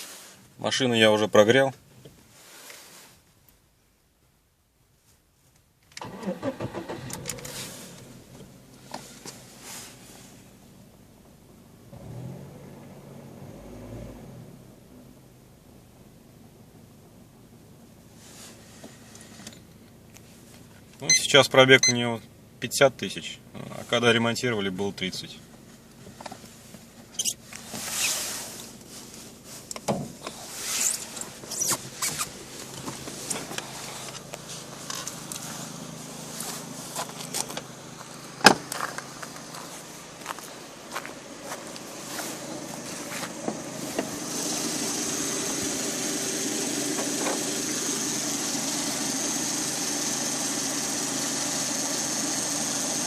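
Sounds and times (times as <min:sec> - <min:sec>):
car engine idling: 0:06.0 - 0:13.6, 0:14.5 - 0:53.0
short hissing swishes: 0:27.2 - 0:29.7, 0:30.3 - 0:32.6.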